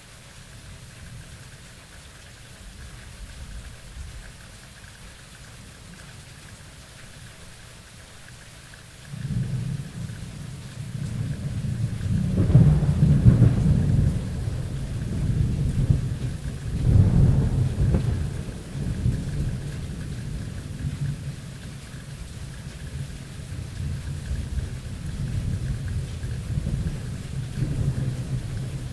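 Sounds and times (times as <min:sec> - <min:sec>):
steady rain: 0:00.0 - 0:28.9
thunder rumbling: 0:09.1 - 0:28.9.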